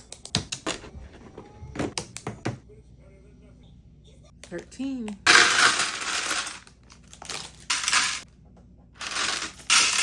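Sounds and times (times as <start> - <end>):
small plastic pieces clattering: 5.3 - 8.2, 9.0 - 10.0.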